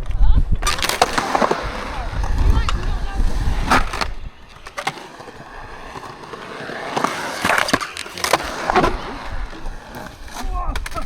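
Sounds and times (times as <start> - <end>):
skateboard wheels rolling: 0.0 - 11.0
skateboard clacks: 0.1 - 11.0.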